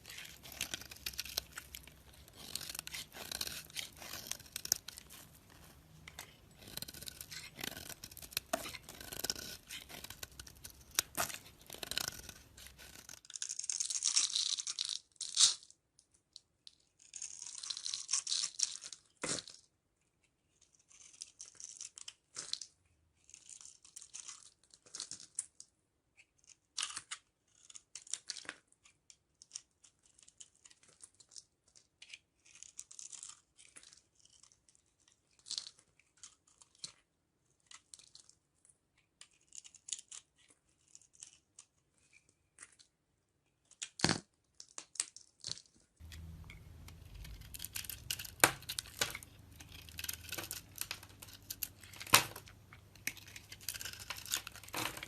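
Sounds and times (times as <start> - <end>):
knife chopping through bar soap: 0.1 - 12.9.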